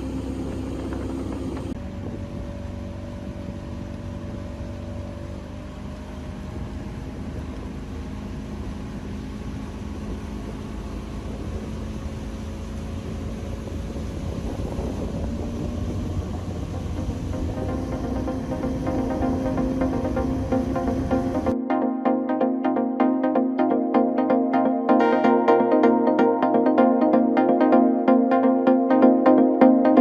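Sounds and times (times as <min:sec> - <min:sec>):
outboard motor running: 0:00.0 - 0:21.6.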